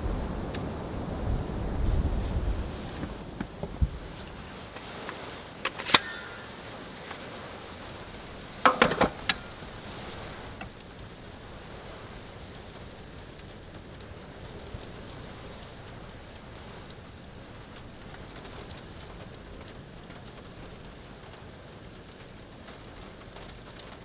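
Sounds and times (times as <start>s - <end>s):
snowstorm wind hiss: 0.0s - 5.4s
sharp click: 4.8s - 7.4s, 8.7s - 9.7s
sharp knocks: 8.7s - 9.8s.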